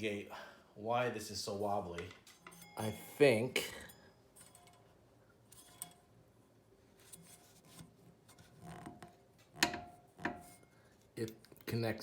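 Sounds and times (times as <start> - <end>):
hands handling fan parts: 4.4 - 6.1.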